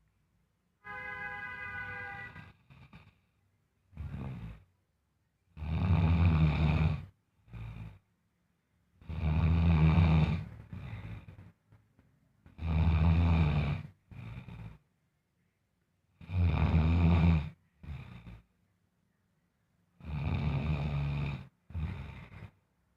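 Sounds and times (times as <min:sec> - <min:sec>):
loud snoring: 0:04.0 - 0:04.7, 0:05.6 - 0:08.0, 0:09.0 - 0:11.3, 0:12.5 - 0:14.8, 0:16.2 - 0:18.5, 0:20.0 - 0:22.6.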